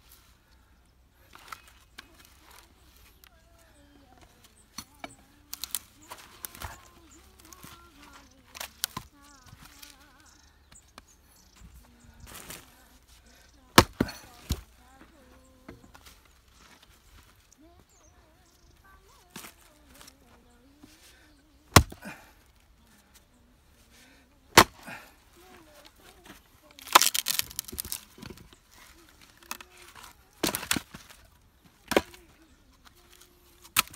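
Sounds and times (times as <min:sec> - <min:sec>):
axe splitting firewood: 0:04.7 - 0:10.0, 0:13.3 - 0:14.8, 0:21.7 - 0:22.4, 0:24.5 - 0:32.3, 0:33.0 - 0:33.9
axe striking log: 0:13.8 - 0:14.6, 0:21.7 - 0:22.1, 0:24.5 - 0:25.0, 0:31.9 - 0:32.2.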